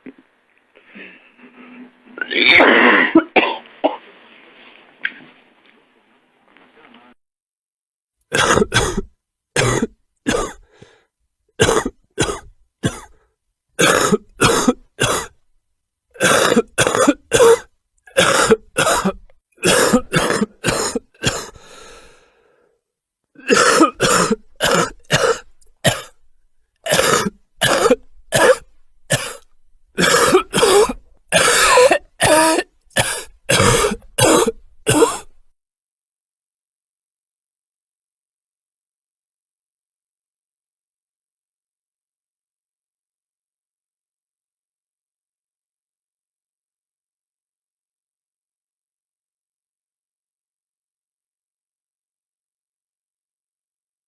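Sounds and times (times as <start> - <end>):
person coughing: 2.3 - 4.0, 8.3 - 10.7, 11.6 - 13.2, 13.8 - 15.4, 16.2 - 21.9, 23.4 - 26.2, 26.8 - 35.4.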